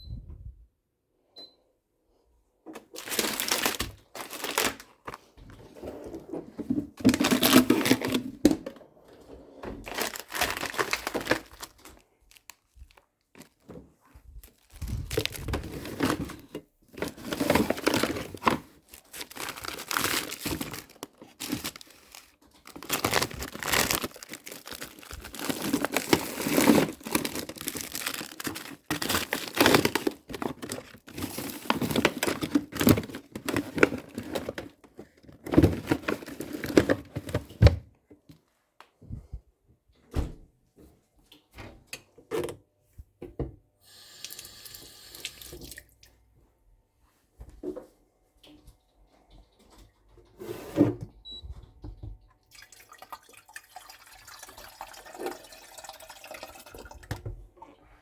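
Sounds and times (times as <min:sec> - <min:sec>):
food packaging tearing: 0:03.0 - 0:05.2, 0:07.1 - 0:08.3, 0:09.9 - 0:13.6, 0:17.0 - 0:34.7.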